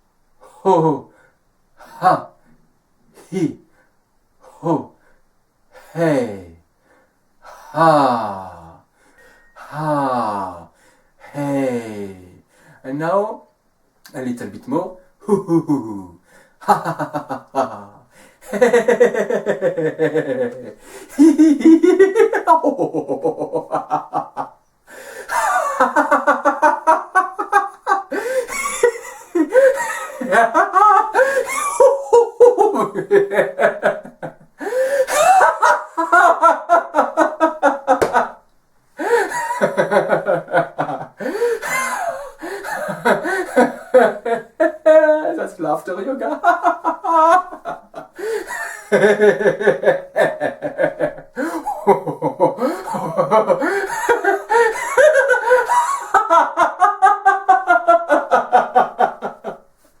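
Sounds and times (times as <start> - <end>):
person laughing: 15.2 - 24.5, 25.3 - 38.4, 39.0 - 45.4, 46.0 - 59.6.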